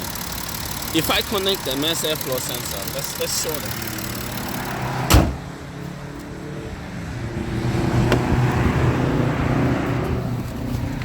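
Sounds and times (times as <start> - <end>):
diesel engine idling: 0.0 - 5.4.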